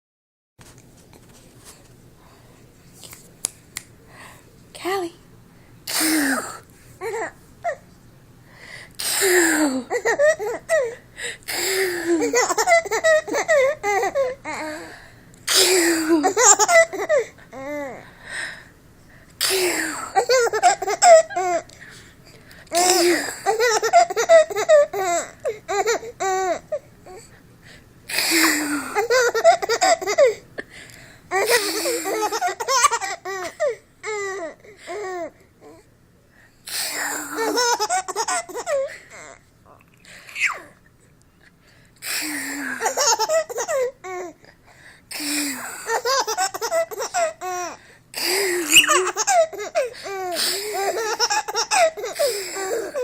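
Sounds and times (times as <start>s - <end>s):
baby giggling: 9.9s - 10.9s, 12.1s - 14.4s, 16.2s - 17.8s, 20.2s - 21.7s, 28.9s - 30.4s, 31.3s - 35.3s, 37.3s - 39.4s, 42.8s - 44.3s, 45.8s - 47.8s, 48.5s - 53.0s.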